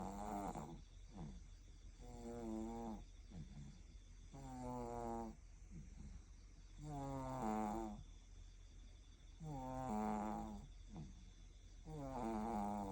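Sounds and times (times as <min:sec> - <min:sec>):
baby snoring: 0:00.0 - 0:01.4, 0:02.0 - 0:03.6, 0:06.8 - 0:08.0, 0:09.4 - 0:10.7, 0:11.9 - 0:12.9.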